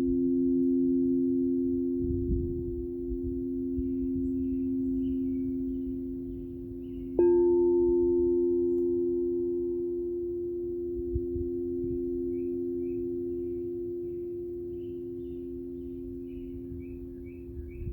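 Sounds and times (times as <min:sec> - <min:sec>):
singing bowl struck: 0:00.0 - 0:17.9
singing bowls ringing: 0:00.0 - 0:17.9
faint bird chirps: 0:03.6 - 0:09.2, 0:11.6 - 0:17.9.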